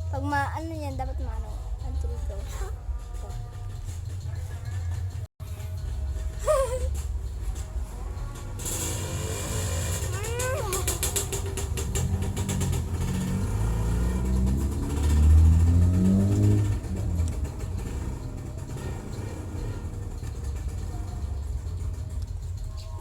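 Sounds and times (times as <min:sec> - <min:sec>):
vehicle engine revving past: 0:08.3 - 0:22.1.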